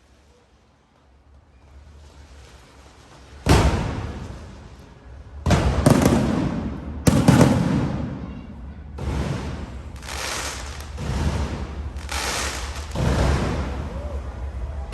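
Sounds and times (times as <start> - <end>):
firework cracks: 5.4 - 14.2
firework shells bursting: 5.5 - 13.9.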